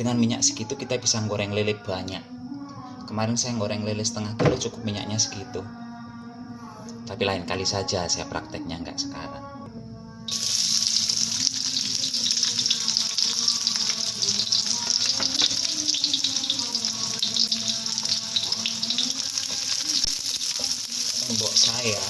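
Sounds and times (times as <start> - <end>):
food sizzling in hot oil: 10.3 - 22.0.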